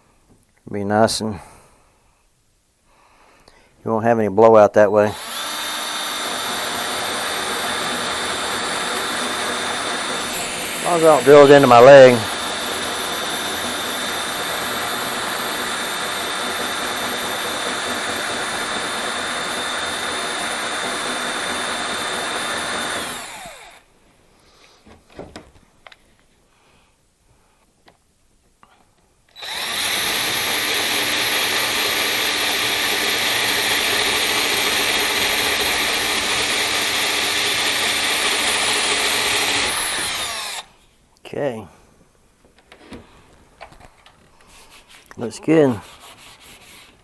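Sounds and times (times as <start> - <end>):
electric drill boring wood: 5.1 - 23.9, 29.3 - 40.7.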